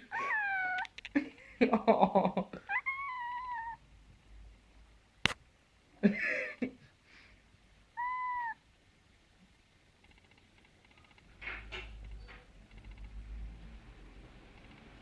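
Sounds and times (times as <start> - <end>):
cat raspy vocal noise: 0.0 - 1.0, 2.6 - 3.8, 8.0 - 8.6
cat short clear call: 8.0 - 8.6.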